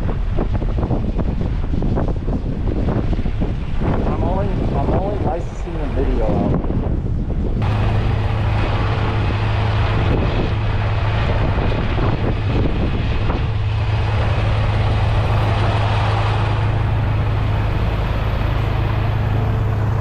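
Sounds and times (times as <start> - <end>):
noisy hiss: 3.7 - 6.4
vehicle engine idling: 7.6 - 20.0.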